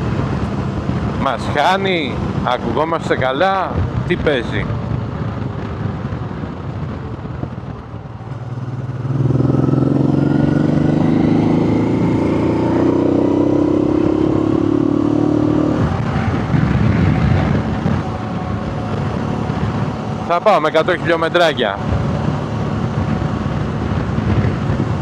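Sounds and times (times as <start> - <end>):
rushing air noise: 3.6 - 25.0
motorcycle engine accelerating: 4.7 - 25.0.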